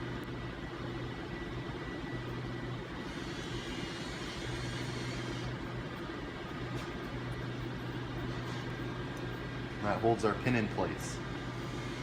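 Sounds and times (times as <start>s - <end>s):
mechanical hum: 0.0s - 12.0s.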